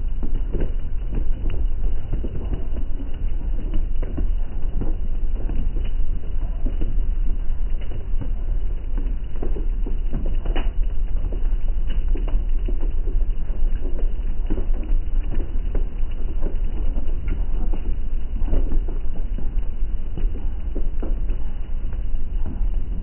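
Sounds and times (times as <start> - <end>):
steady low rumble: 0.0 - 23.0
heavy rain on window glass: 0.1 - 23.0.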